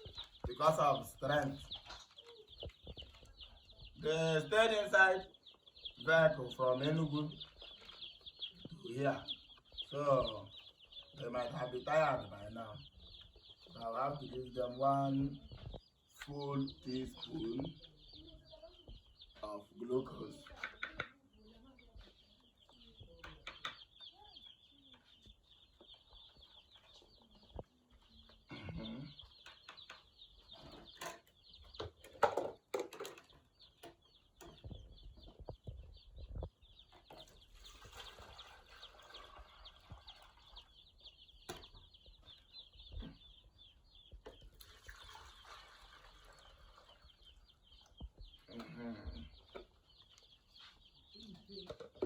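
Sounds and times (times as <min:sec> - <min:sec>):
chicks peeping: 0:00.0 - 0:52.0
knocks and rustles: 0:29.3 - 0:37.9.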